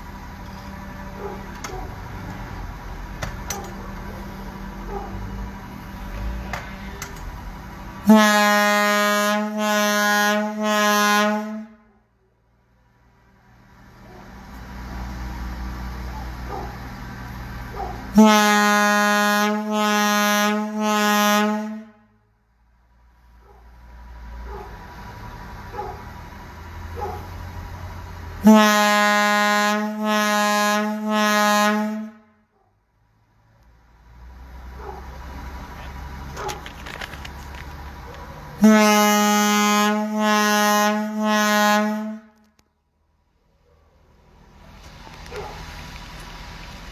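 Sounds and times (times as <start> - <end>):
air horn blowing low tone: 8.0 - 12.0, 18.1 - 22.3, 28.4 - 32.5, 38.6 - 42.6.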